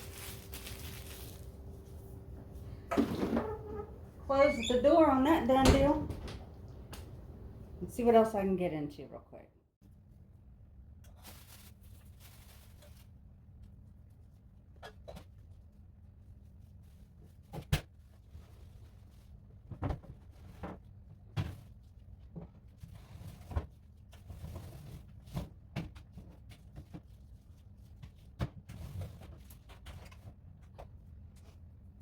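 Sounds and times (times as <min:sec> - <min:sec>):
short rustle: 0:00.0 - 0:02.7.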